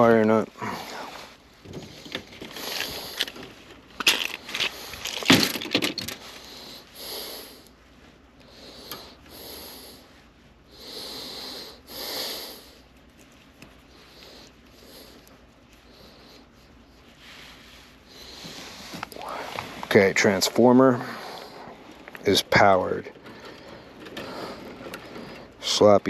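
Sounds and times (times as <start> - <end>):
heavy breathing: 0.0 - 5.5, 6.1 - 13.0, 13.7 - 26.0
small hardware rattling: 23.1 - 25.6.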